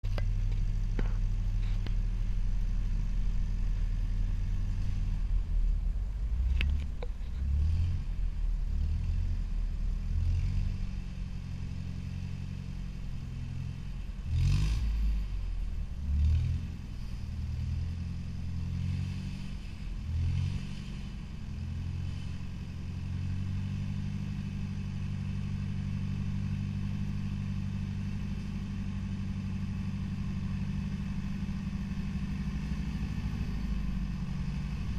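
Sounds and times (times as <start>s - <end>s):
tractor engine under load: 0.0s - 7.7s.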